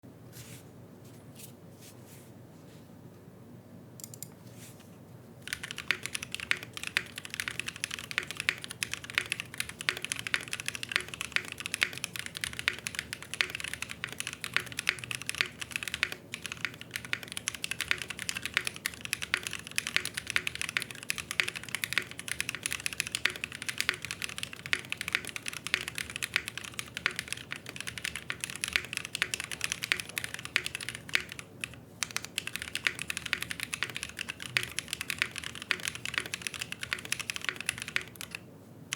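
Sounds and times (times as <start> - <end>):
mechanical keyboard typing: 4.0 - 4.3, 5.4 - 38.4.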